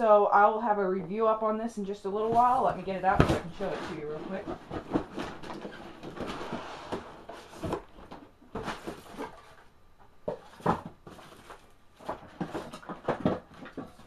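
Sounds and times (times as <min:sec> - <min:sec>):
packaging rustling: 0:02.3 - 0:14.0.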